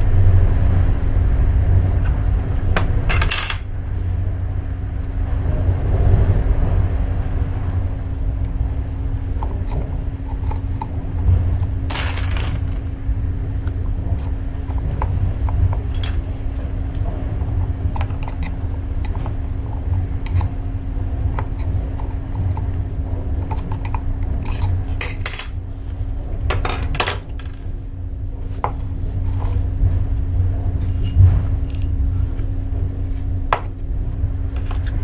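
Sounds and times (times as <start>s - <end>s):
low rumble and hum: 0.0s - 35.0s
metal parts clinking: 3.1s - 3.9s, 11.9s - 12.8s, 25.0s - 25.7s, 26.5s - 27.7s.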